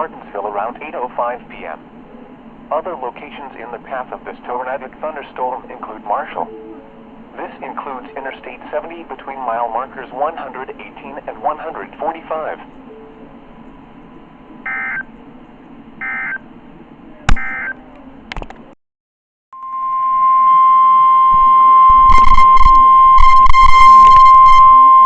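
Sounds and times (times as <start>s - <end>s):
steady alarm tone: 14.6s - 15.1s, 16.0s - 16.4s, 19.6s - 25.0s.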